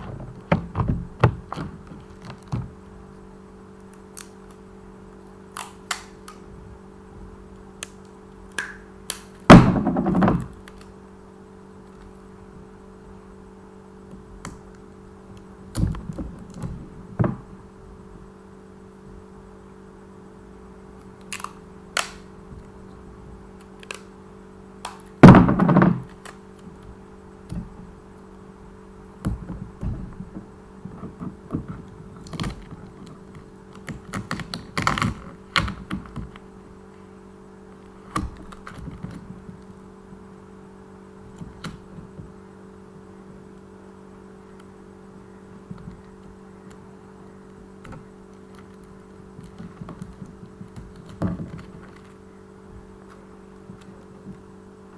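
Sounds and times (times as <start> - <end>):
rustling: 0.0 - 2.9
steady low hum: 0.0 - 54.9.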